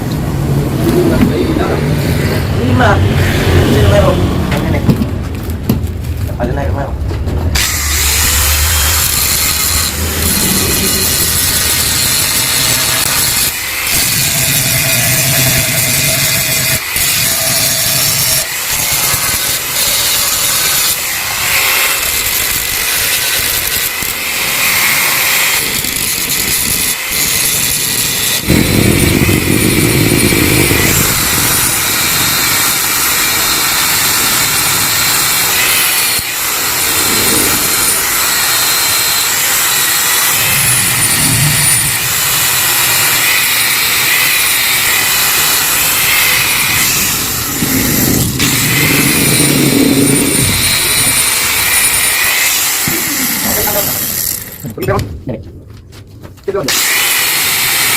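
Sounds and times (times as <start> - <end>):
two-stroke engine revving: 28.4 - 51.9.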